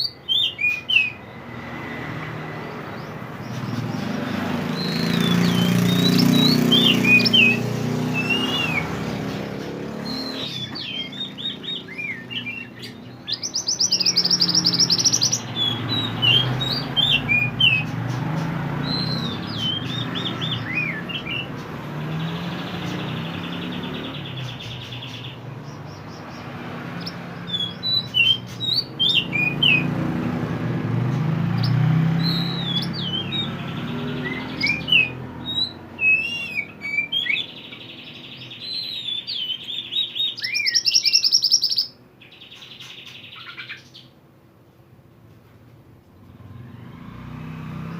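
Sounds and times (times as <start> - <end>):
bird buzzy trill: 0.0 - 30.3
bird chirping: 0.0 - 44.2.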